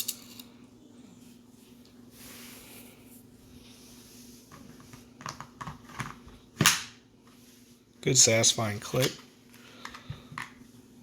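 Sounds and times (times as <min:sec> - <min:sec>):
soft gas hiss: 0:00.4 - 0:05.2.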